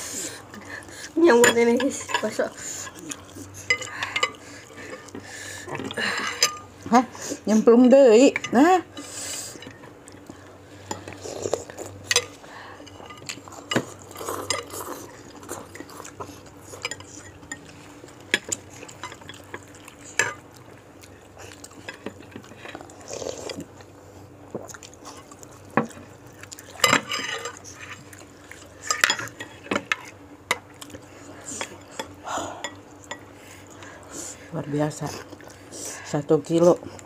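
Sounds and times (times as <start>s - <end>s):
cutlery clinking on a bowl: 3.6s - 5.1s, 6.2s - 6.7s, 12.0s - 16.1s, 16.8s - 20.4s, 26.7s - 30.7s.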